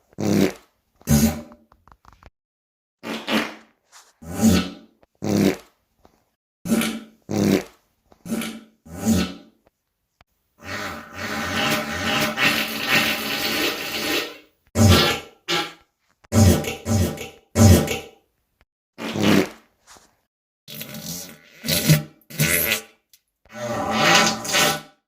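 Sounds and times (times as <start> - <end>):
person farting: 0.0 - 2.2, 3.0 - 5.8, 6.7 - 9.6, 10.6 - 18.2, 19.0 - 19.7, 20.7 - 23.1.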